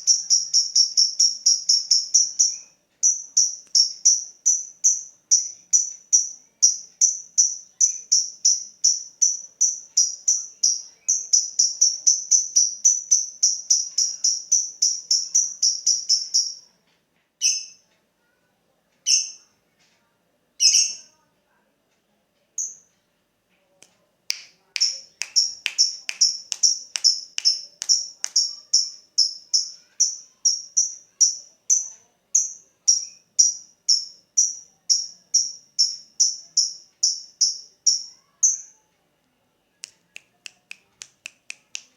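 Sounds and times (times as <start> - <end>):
lovebird high sharp chirps: 0.0 - 16.7, 20.6 - 21.1, 24.3 - 38.8.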